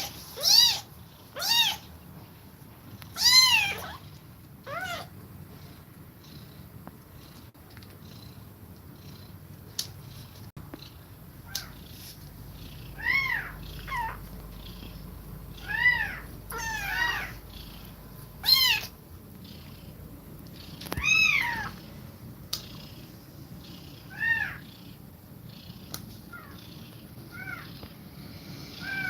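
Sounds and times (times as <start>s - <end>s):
kittens mewing: 3.2s - 4.0s, 11.4s - 19.0s, 20.6s - 21.8s, 23.7s - 24.9s, 28.7s - 29.0s
cat purring: 5.3s - 29.0s.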